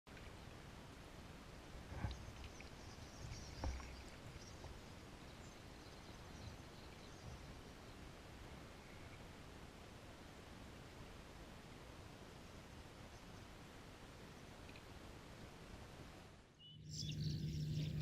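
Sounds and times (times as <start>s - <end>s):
small birds twittering: 2.1s - 8.0s, 16.6s - 18.0s.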